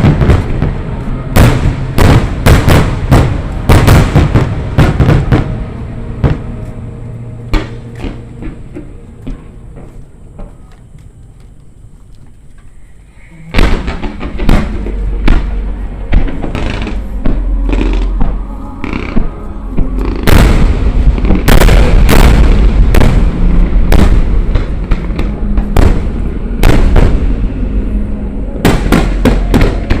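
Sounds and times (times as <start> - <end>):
fireworks booms and crackles: 0.0 - 6.6, 13.5 - 30.0
heavy rumble: 0.0 - 30.0.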